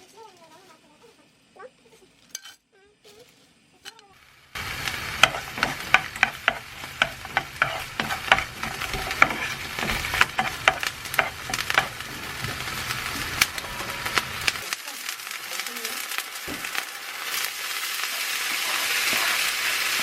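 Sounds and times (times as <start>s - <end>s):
steady low hum: 3.7s - 14.6s
food sizzling in a frying pan: 4.2s - 20.0s.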